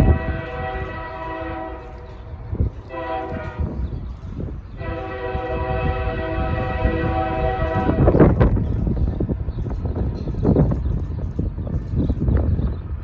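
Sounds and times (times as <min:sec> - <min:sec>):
locomotive air horn blasts: 0:00.0 - 0:02.2, 0:02.9 - 0:03.8, 0:04.8 - 0:08.4
low rumble of train: 0:00.0 - 0:13.0.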